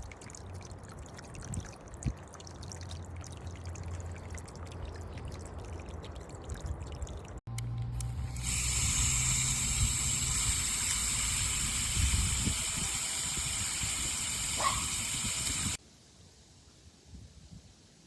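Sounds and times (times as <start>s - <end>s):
fountain pump humming: 7.6s - 15.8s
water spraying and splashing: 8.2s - 15.8s.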